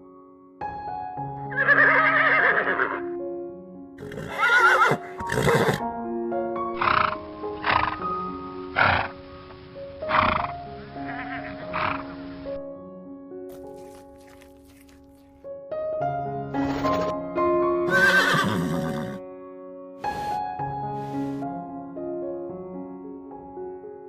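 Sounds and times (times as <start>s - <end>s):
background music: 0.0s - 24.0s
animal calls: 8.8s - 9.1s, 10.1s - 12.1s.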